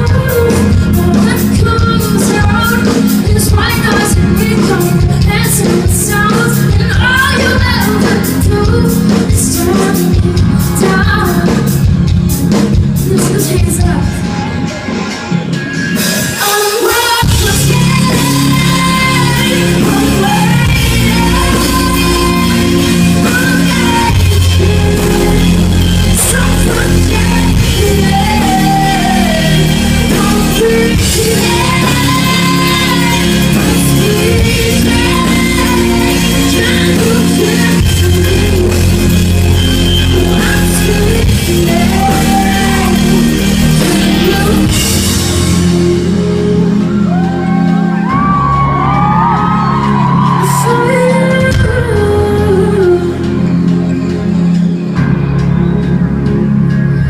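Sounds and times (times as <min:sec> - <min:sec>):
heavy bass: 0:00.0 - 0:57.0
rock band playing live: 0:00.0 - 0:57.0
person singing: 0:16.0 - 0:54.2.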